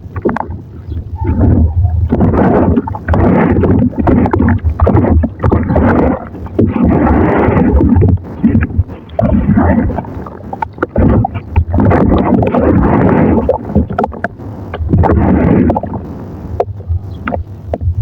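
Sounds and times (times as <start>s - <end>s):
wet mud squelching and sloshing: 1.2s - 16.0s.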